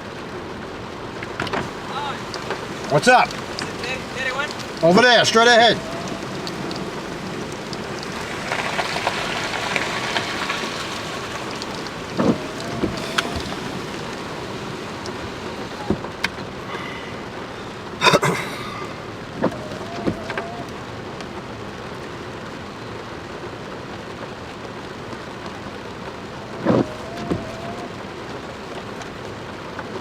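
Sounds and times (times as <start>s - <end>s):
heavy rain: 0.0s - 30.0s.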